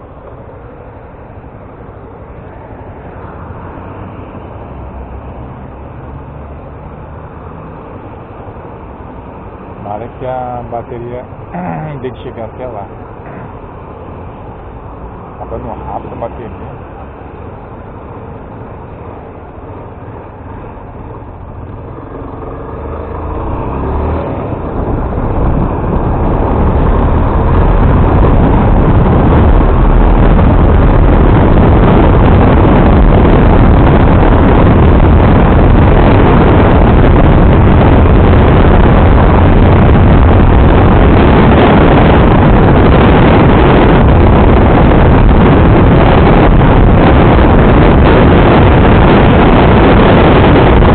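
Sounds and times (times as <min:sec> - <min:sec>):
wind rushing over microphone: 0:00.0 - 0:50.9.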